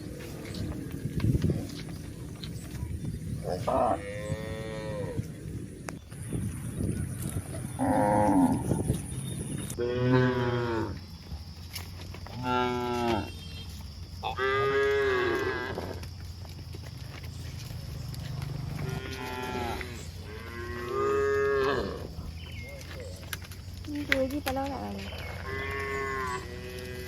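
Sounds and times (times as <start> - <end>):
cattle mooing: 3.4 - 5.3, 7.7 - 8.9, 9.8 - 11.0, 18.4 - 22.2, 25.2 - 27.0.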